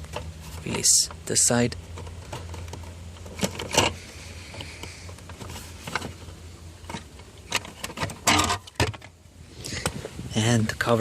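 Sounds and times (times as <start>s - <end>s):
steady low hum: 0.0s - 11.0s
plastic clatter: 1.9s - 6.2s, 6.8s - 9.1s.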